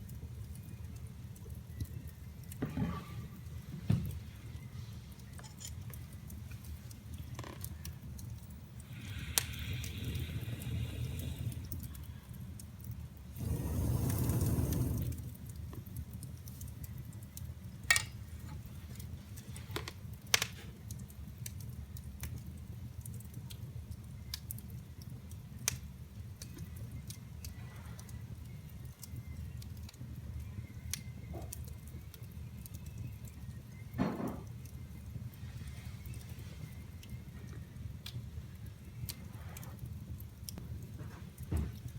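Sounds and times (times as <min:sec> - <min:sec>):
burning wood popping and crackling: 0:00.0 - 0:41.9
fire flames rumbling: 0:05.9 - 0:32.8.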